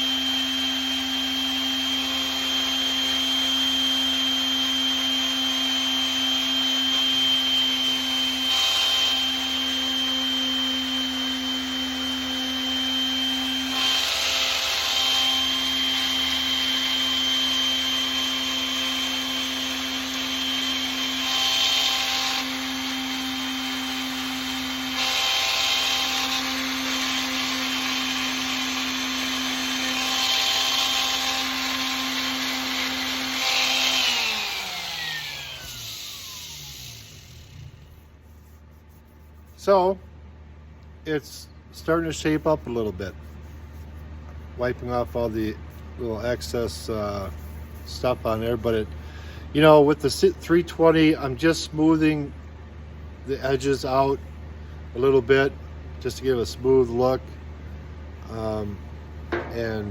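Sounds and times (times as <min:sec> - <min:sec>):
motor winding down: 0:00.0 - 0:38.1
electric sander running: 0:00.0 - 0:38.5.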